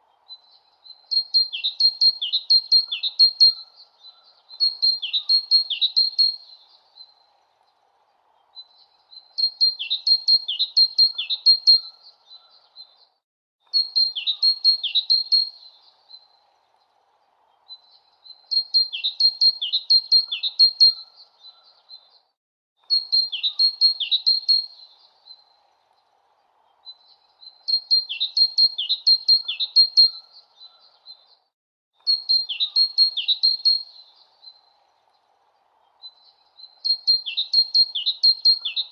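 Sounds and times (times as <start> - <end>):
faint background hiss: 0.0 - 38.9
songbird chirping: 0.0 - 38.9.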